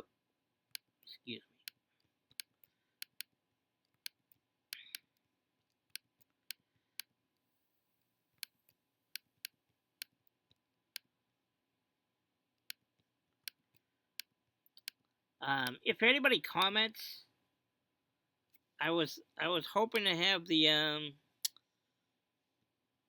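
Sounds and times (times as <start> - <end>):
computer mouse buttons clicking: 1.6 - 7.1, 13.4 - 15.0.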